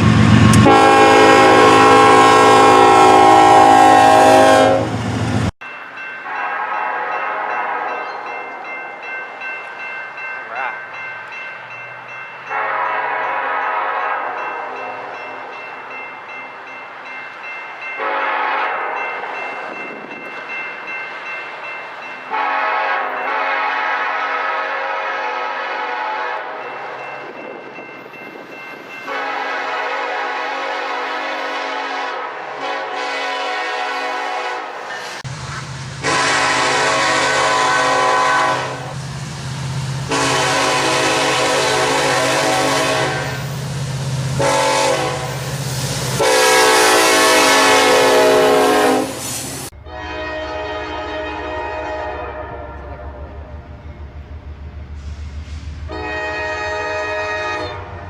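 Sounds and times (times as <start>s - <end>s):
train low rumble: 0.0s - 34.5s, 35.2s - 58.0s
locomotive air horn blasts: 0.4s - 5.0s, 6.3s - 8.0s, 12.5s - 14.4s, 18.0s - 19.0s, 22.3s - 26.6s, 29.1s - 34.8s, 36.0s - 39.0s, 40.0s - 43.5s, 44.3s - 45.5s, 46.1s - 53.4s, 55.8s - 58.0s.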